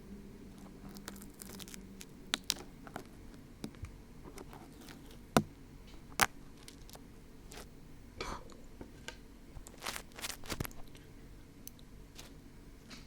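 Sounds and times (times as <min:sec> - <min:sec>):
glue peeling off microphone: 0:09.6 - 0:10.9.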